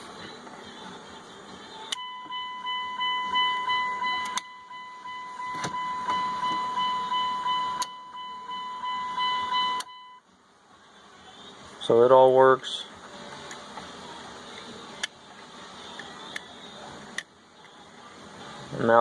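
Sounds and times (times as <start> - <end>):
pulsing dashboard warning chime: 1.9 - 10.2.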